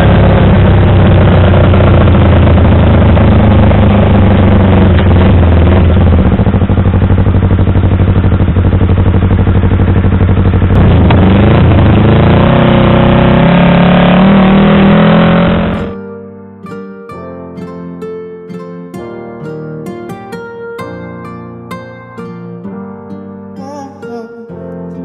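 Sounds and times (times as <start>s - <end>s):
motorcycle engine idling: 0.0s - 13.4s.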